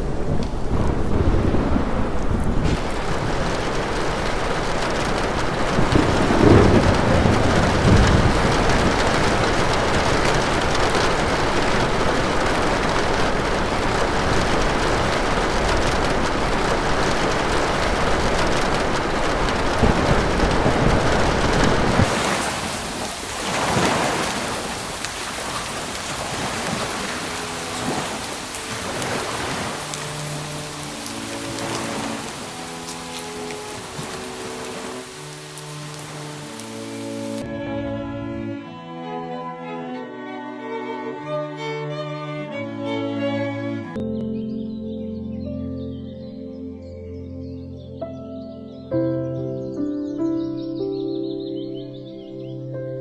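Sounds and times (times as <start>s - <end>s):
heavy rain: 0.0s - 37.5s
thunder rolling: 0.0s - 37.5s.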